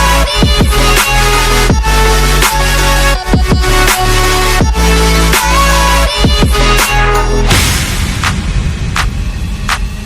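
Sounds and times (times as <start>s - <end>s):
electronic music: 0.0s - 10.0s
heavy bass rumble: 0.0s - 10.0s
sharp percussive hits: 6.2s - 10.0s.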